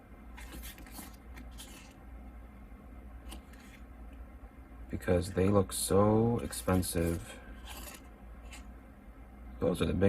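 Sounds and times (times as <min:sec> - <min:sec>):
photobook pages turning: 0:00.4 - 0:02.0, 0:03.2 - 0:03.8, 0:06.4 - 0:08.7.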